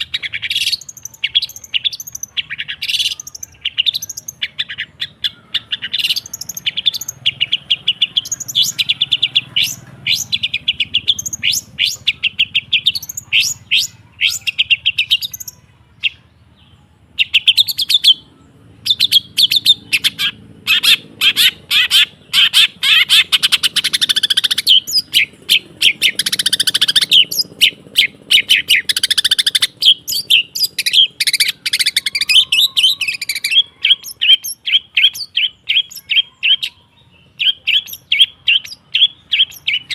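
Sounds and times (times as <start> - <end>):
bird chattering song: 0.0 - 39.9
bird harsh rasping: 19.0 - 36.8.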